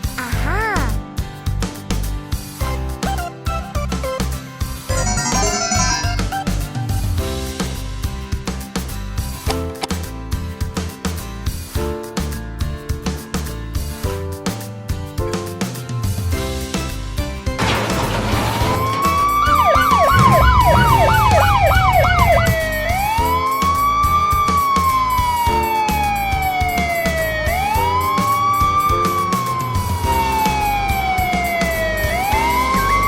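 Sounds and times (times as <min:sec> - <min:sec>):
background music: 0:00.0 - 0:33.0
fire truck siren wailing: 0:18.6 - 0:33.0
fast yelping siren warble: 0:19.1 - 0:33.0.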